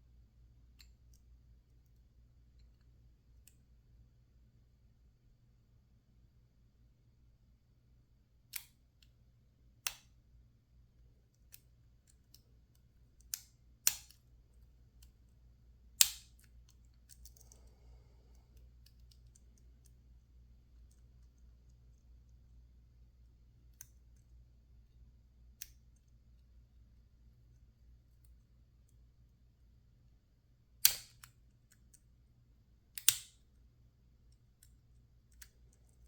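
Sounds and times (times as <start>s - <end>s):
faint low hum: 0.0s - 36.0s
lock pick clicking in padlock: 13.2s - 14.2s, 16.0s - 16.5s, 30.8s - 31.4s, 33.0s - 33.4s.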